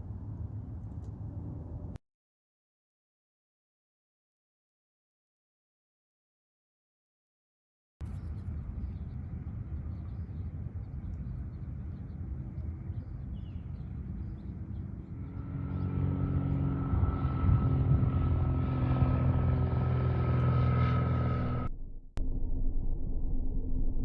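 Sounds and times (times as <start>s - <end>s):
low engine drone: 8.0s - 24.0s
steady hum: 15.1s - 24.0s.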